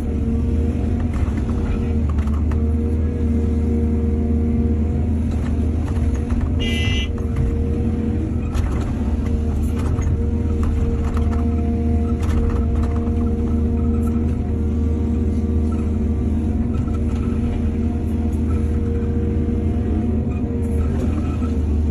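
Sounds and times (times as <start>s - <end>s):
heavy diesel machinery drone: 0.0s - 21.9s.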